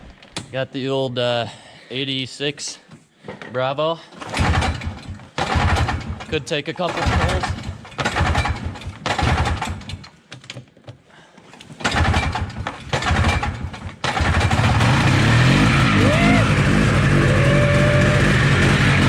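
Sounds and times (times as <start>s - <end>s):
engine sputtering: 4.3s - 10.0s, 11.8s - 19.0s
two-stroke engine idling: 6.9s - 9.7s, 12.0s - 19.0s.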